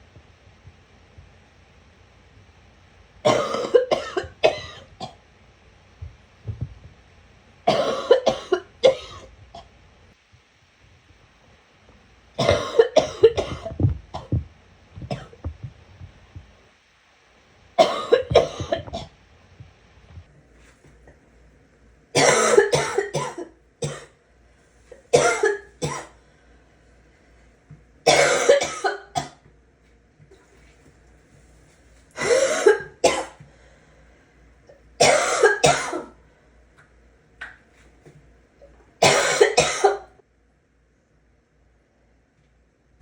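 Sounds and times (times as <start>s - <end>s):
person coughing and gagging: 3.3s - 5.2s, 7.7s - 9.3s, 12.4s - 15.7s, 17.8s - 19.1s, 22.2s - 24.1s, 25.1s - 26.1s, 28.1s - 29.4s, 32.2s - 33.4s, 35.0s - 36.2s, 39.0s - 40.1s.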